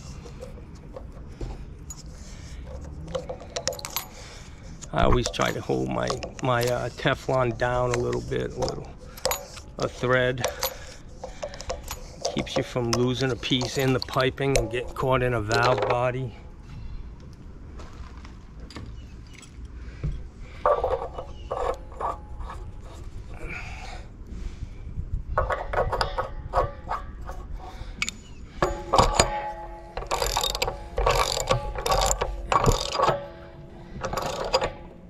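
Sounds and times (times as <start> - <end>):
ratchet wrench clicking: 28.0 - 33.2, 34.0 - 34.8.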